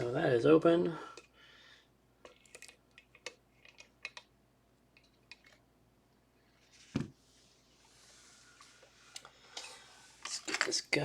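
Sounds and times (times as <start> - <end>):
object set down thump: 6.9 - 7.2.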